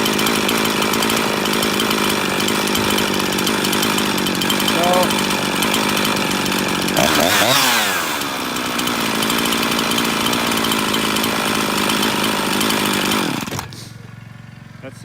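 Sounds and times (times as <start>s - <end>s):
chainsaw revving: 0.0s - 14.4s
chainsaw idling: 0.0s - 15.0s.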